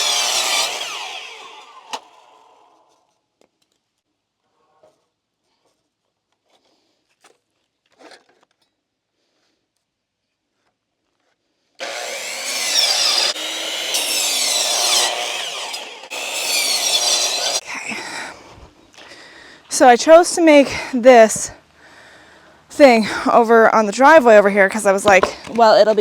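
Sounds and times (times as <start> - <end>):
power saw cutting wood: 0.0 - 3.0, 11.8 - 17.8.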